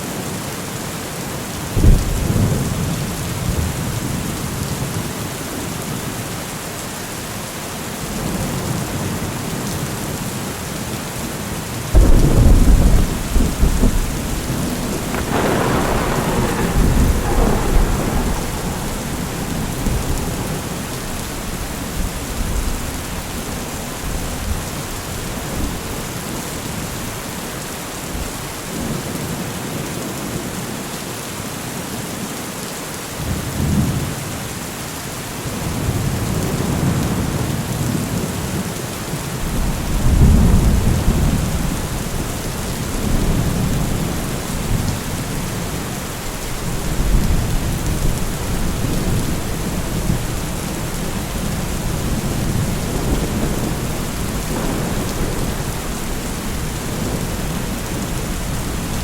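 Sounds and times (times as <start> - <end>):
heavy rain: 0.0 - 59.0
thunder rumbling: 12.0 - 26.0, 39.4 - 59.0.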